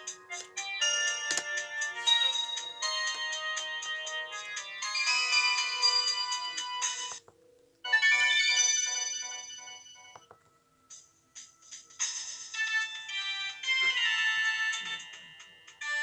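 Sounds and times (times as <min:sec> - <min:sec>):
mobile phone electronic tune: 0:00.6 - 0:07.2.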